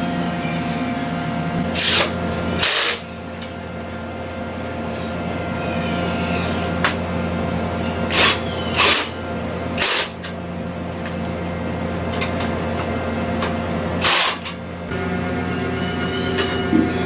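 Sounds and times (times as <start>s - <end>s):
low mechanical hum: 0.0s - 17.0s.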